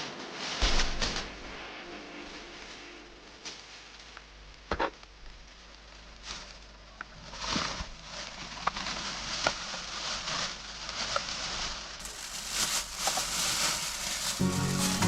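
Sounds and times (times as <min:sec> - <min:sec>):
music: 0:14.2 - 0:15.0.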